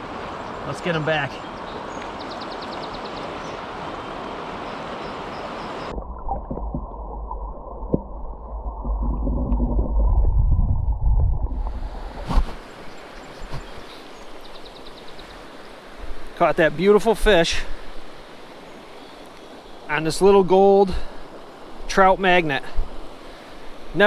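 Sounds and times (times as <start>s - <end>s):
stream running over rocks: 0.0s - 10.3s, 11.5s - 24.0s
underwater gurgling rumble: 5.9s - 12.3s.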